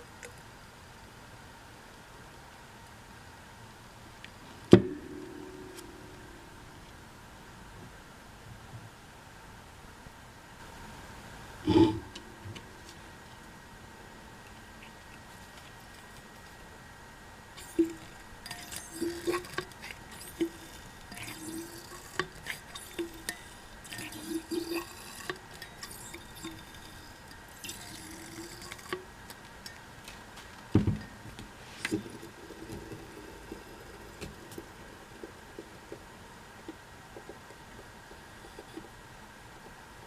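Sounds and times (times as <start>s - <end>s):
dull thump: 4.7s - 5.3s, 30.7s - 31.1s
shock absorber oil squelching: 17.6s - 30.7s, 31.4s - 38.9s.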